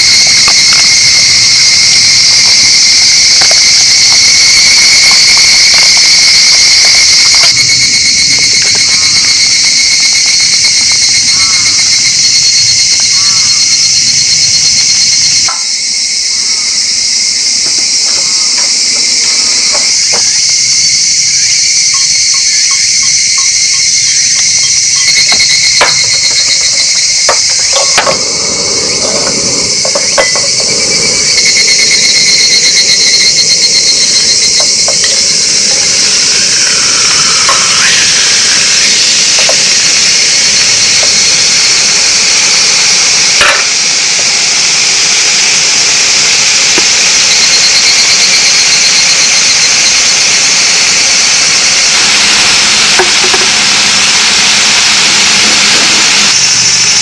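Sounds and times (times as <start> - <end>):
crickets and insects trilling: 0.0 - 57.0.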